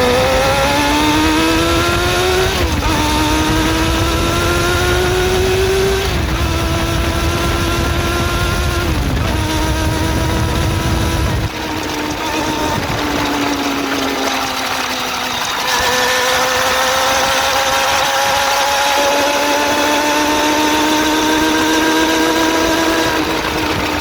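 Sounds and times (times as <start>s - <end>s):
engine ticking: 0.0s - 24.0s
motorcycle engine running: 0.0s - 24.0s.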